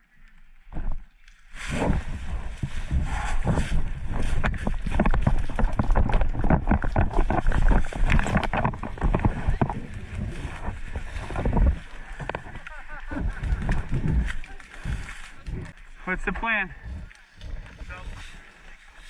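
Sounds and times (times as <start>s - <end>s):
rustling and knocking: 1.6s - 18.4s.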